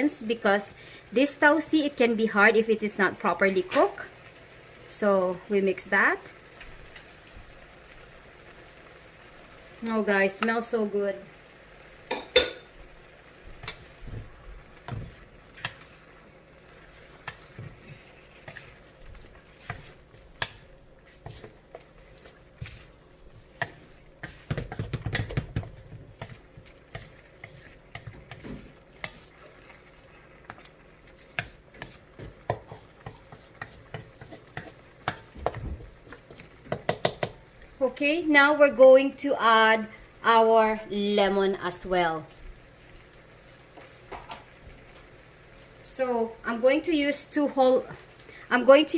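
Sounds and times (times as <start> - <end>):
utensil scraping a cooking pot: 13.6 - 37.9.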